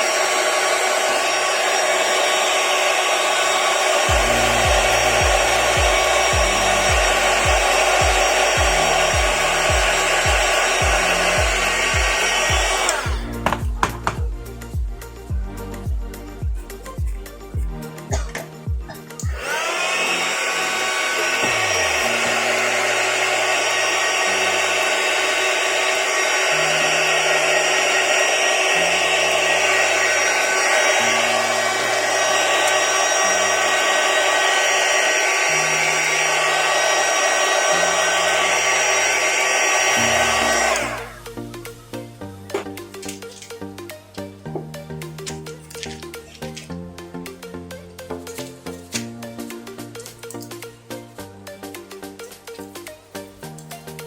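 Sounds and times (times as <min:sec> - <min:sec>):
electric air blower whining: 0:00.0 - 0:14.2, 0:19.2 - 0:43.6
background music: 0:03.9 - 0:54.0.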